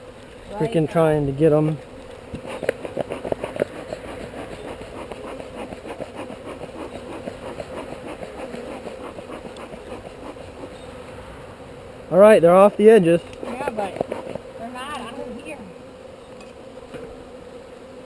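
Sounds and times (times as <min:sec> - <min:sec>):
bees buzzing: 0:00.0 - 0:18.0
sharp taps: 0:02.3 - 0:04.1, 0:13.3 - 0:14.4.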